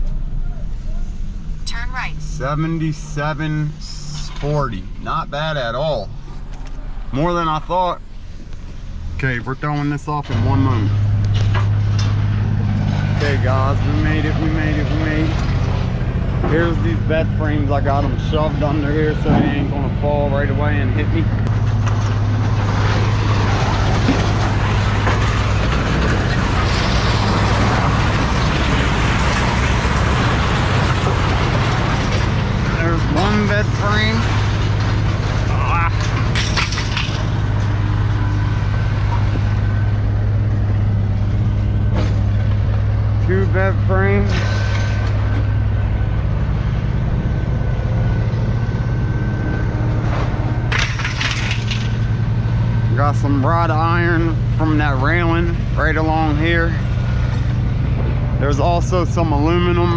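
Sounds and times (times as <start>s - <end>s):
large engine running: 0.0s - 59.9s
scrap metal clattering: 21.5s - 37.9s, 50.1s - 52.1s.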